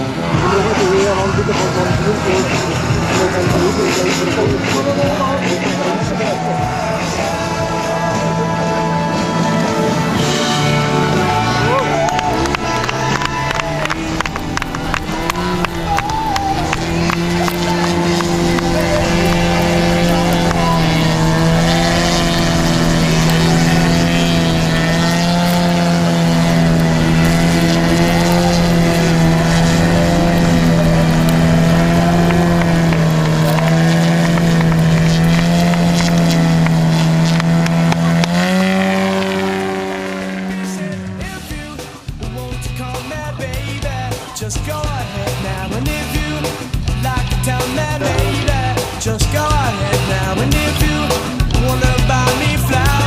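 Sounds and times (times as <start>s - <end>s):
model airplane engine drone: 0.0s - 42.2s.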